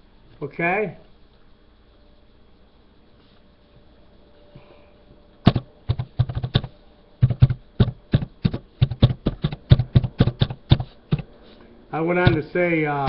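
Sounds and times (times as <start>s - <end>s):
laptop keyboard typing: 5.5s - 11.3s.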